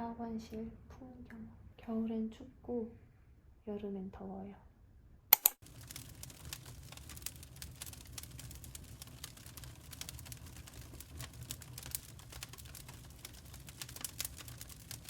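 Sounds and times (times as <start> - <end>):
firewood crackling and popping: 5.4 - 15.0
fire low rumble: 5.6 - 15.0.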